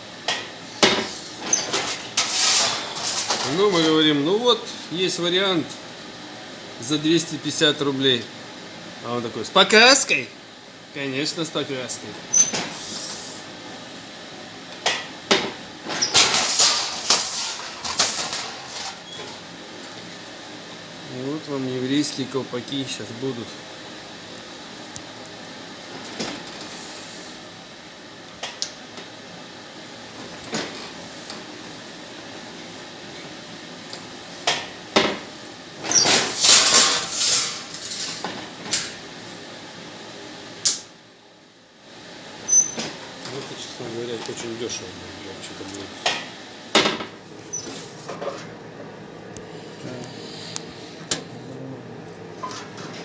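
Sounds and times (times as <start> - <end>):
metal clattering and scraping: 1.6 - 3.6.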